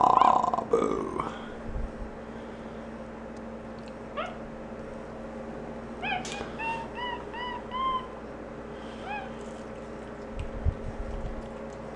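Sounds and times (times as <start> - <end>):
faint steady hum: 0.0 - 11.9
monkey chirping: 4.2 - 4.4, 6.0 - 8.2, 9.0 - 9.4.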